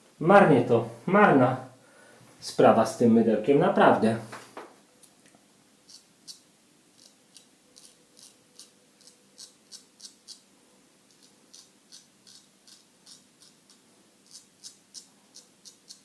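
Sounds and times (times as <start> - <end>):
razor scraping stubble: 5.9 - 6.4, 7.0 - 10.4, 11.1 - 16.0.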